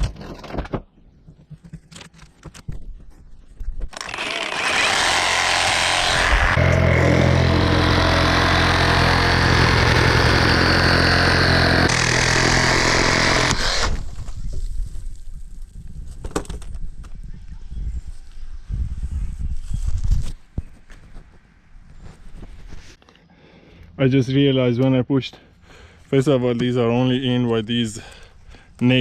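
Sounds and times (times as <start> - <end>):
power tool motor running: 4.0 - 14.0.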